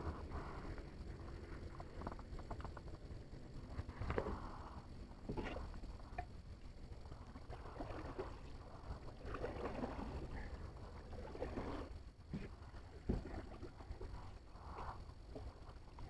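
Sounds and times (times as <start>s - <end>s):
steady low rumble: 0.0s - 16.0s
water splashing and sloshing: 0.0s - 16.0s.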